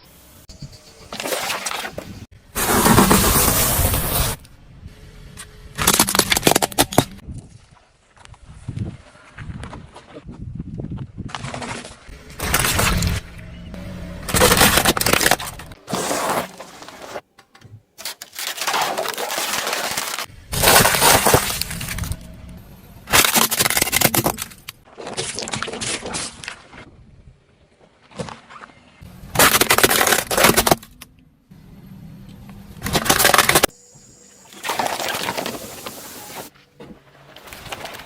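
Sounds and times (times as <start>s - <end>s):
objects crushed under car tyres: 5.7s - 7.2s, 11.3s - 13.4s, 14.2s - 17.2s, 18.0s - 22.3s, 23.0s - 24.8s, 29.2s - 31.0s, 32.8s - 33.8s, 34.5s - 36.0s.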